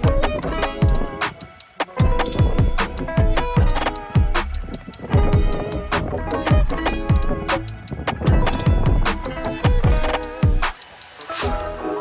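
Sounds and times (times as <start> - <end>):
music with kick drum and snare: 0.0 - 11.8.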